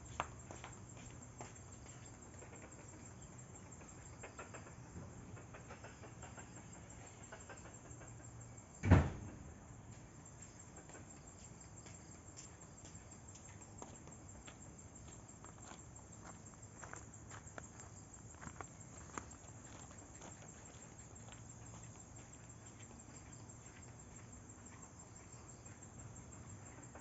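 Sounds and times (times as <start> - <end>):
faint steady background noise: 0.0 - 27.0
heavy thump: 8.8 - 9.4.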